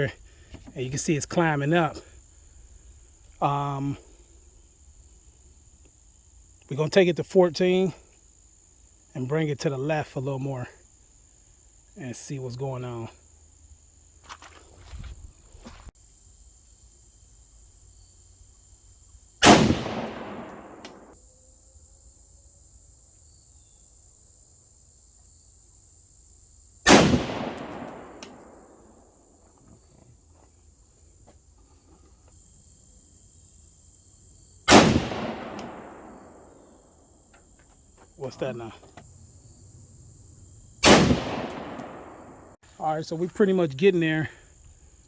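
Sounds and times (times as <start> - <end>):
rifle shots with echo: 19.4 - 21.2, 26.9 - 29.0, 34.7 - 36.6, 40.8 - 42.6.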